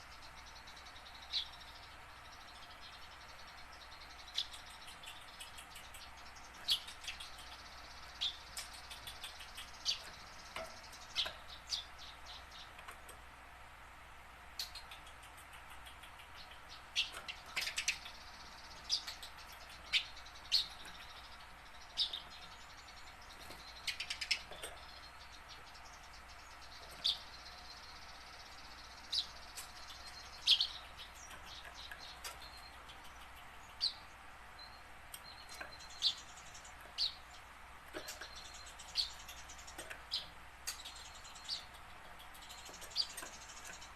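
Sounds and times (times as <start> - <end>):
sparrow chirping: 0.0 - 43.9.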